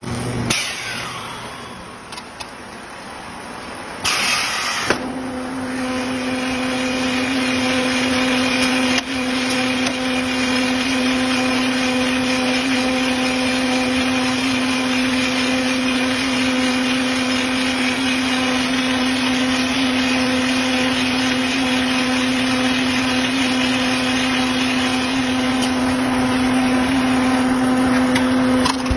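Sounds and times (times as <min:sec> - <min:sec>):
loud mechanical burst: 0:00.0 - 0:02.0, 0:04.0 - 0:19.3
baler machinery humming: 0:00.0 - 0:28.9.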